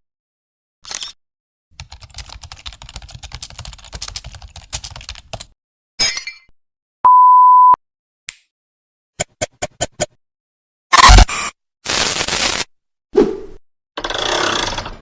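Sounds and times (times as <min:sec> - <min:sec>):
rapid keyboard typing clicks: 0:01.8 - 0:05.6
steady censor beep: 0:07.0 - 0:07.8, 0:10.9 - 0:11.5.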